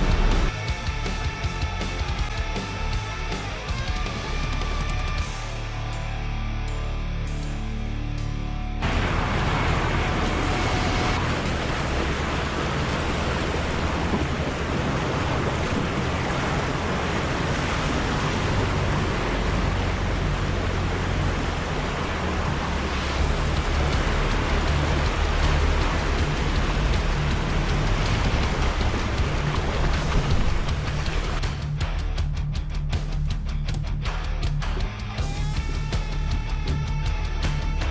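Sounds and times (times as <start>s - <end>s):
steady rushing noise: 0.0s - 2.4s, 8.8s - 32.4s
vehicle engine drone: 0.0s - 37.9s.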